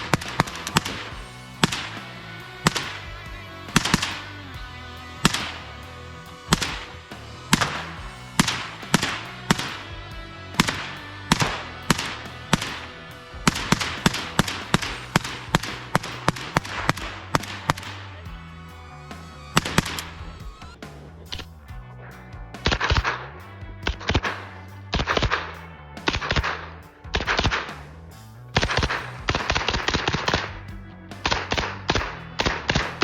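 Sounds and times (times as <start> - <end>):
gunshots: 0.0 - 4.4, 5.2 - 5.9, 6.5 - 18.3, 23.8 - 27.8, 28.6 - 30.6, 31.2 - 33.0
background music: 0.0 - 33.0.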